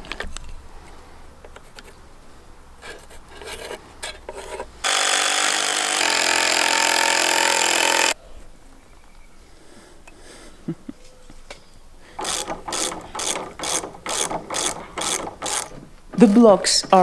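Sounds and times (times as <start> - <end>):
impact driver driving screw: 4.8 - 8.2, 12.2 - 15.8
wood scraping and knocking: 12.2 - 17.0.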